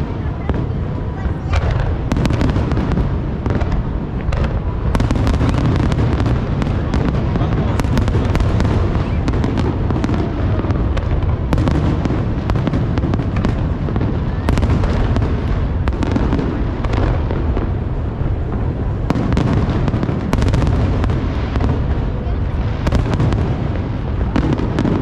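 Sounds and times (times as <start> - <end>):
fireworks cracks and crackles: 0.0 - 25.0.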